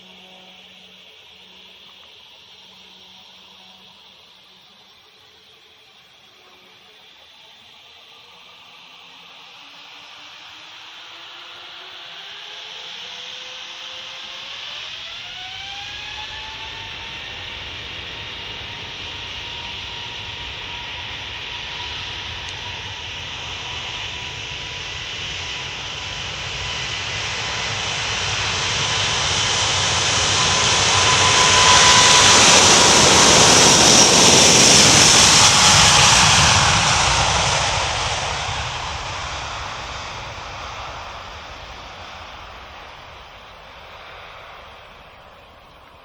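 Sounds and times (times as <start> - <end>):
jet engines passing by: 9.3 - 46.0.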